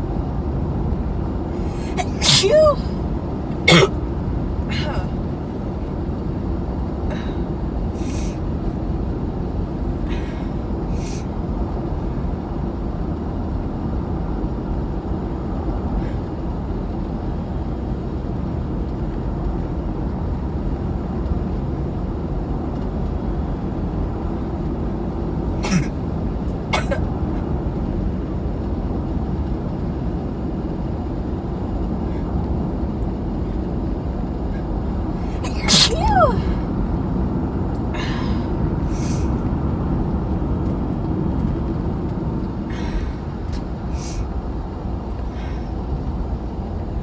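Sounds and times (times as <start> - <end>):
chesty stifled sneeze: 1.6 - 4.0, 4.6 - 5.3, 8.0 - 8.4, 11.0 - 11.2, 25.6 - 26.0, 26.7 - 27.0, 35.2 - 36.7, 38.0 - 39.3, 44.0 - 44.2.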